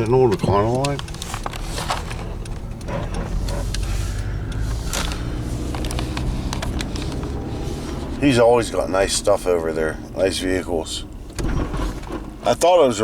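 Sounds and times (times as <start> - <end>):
clicks and rattles: 0.0 - 8.0
vehicle engine running: 0.0 - 13.0.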